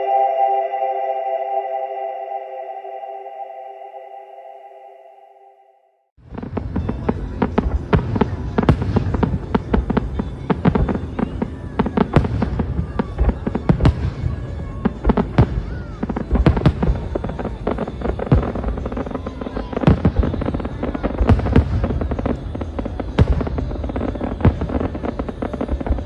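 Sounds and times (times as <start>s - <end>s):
fireworks bangs and crackling: 6.2s - 26.0s.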